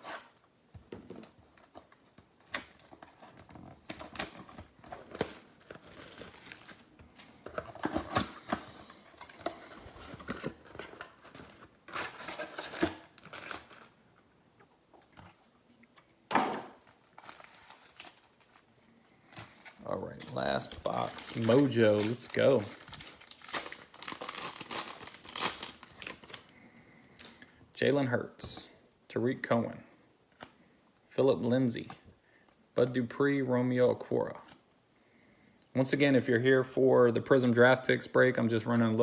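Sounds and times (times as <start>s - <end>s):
plastic wrapping crinkling: 2.0s - 14.0s, 16.8s - 18.7s, 19.3s - 26.5s
packaging tearing: 3.8s - 6.9s, 9.3s - 14.0s, 17.0s - 18.6s, 19.6s - 26.4s.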